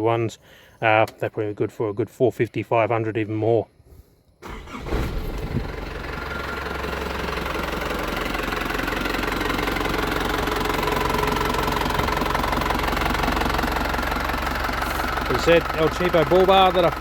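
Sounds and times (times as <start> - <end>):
diesel engine idling: 4.4 - 17.0.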